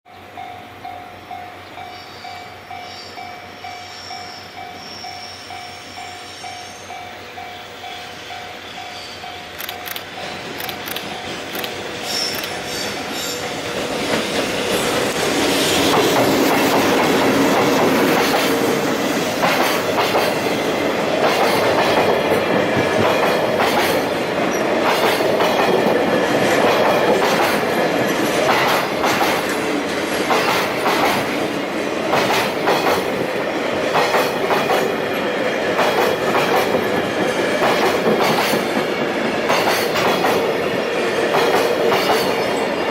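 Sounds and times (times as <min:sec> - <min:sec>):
train rolling rumble: 0:00.2 - 0:42.9
train wheels clacking on rail joints: 0:09.5 - 0:42.8.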